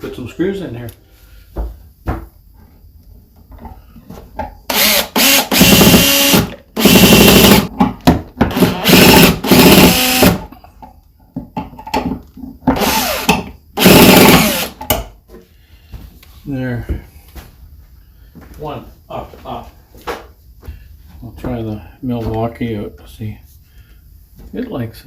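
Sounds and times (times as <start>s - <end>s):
quiet knocks and handling: 1.5s - 4.6s
power drill driving screws: 4.7s - 7.7s, 8.5s - 10.5s, 12.8s - 14.8s.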